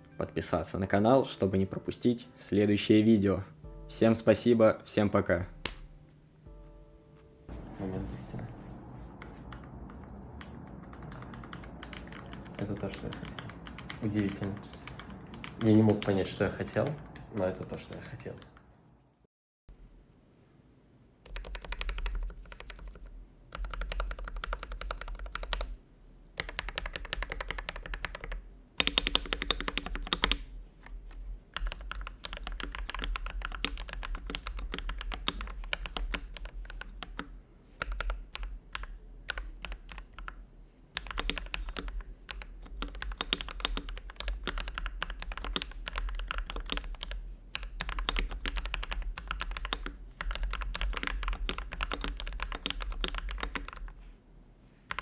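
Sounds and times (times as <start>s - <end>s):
mechanical keyboard typing: 9.5s - 18.6s, 21.2s - 25.8s, 26.4s - 40.4s, 41.0s - 54.0s.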